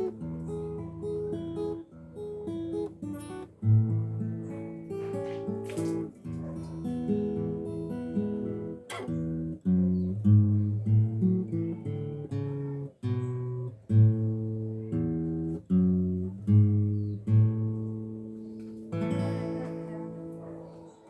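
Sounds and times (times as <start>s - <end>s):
acoustic guitar music: 0.0s - 21.0s.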